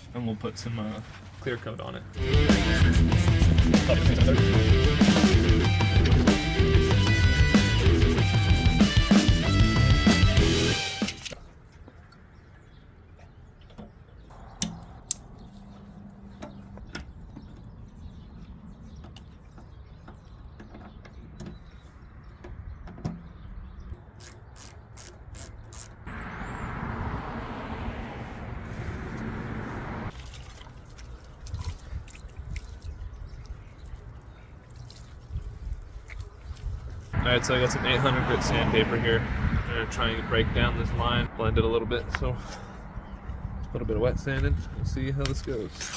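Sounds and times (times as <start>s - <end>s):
spray paint hissing: 24.2s - 26.0s.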